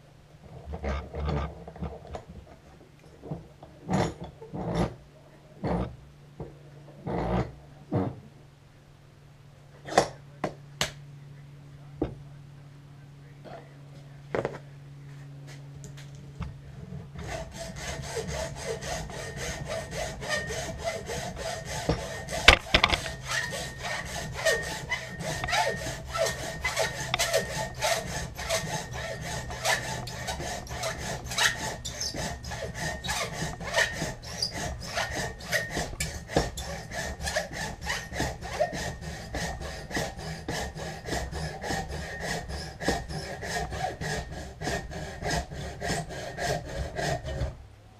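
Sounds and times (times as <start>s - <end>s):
handsaw cutting antler: 16.8s - 47.6s.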